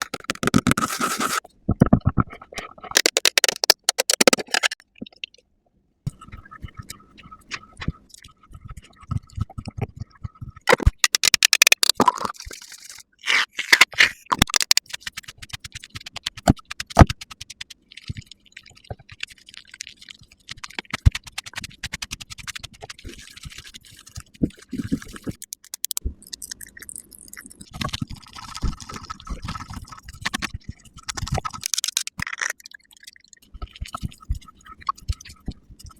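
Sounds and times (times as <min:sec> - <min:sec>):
scratchy scraping and brushing: 0:00.0 - 0:01.5, 0:12.4 - 0:14.4
cosmetic cases clicking: 0:03.0 - 0:04.8.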